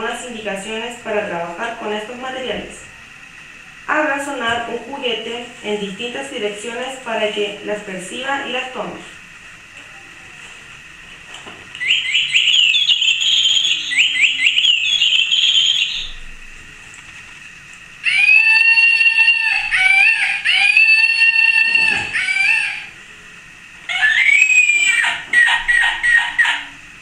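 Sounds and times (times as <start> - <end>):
squeaky baby toys: 18.0 - 22.9, 23.9 - 26.8.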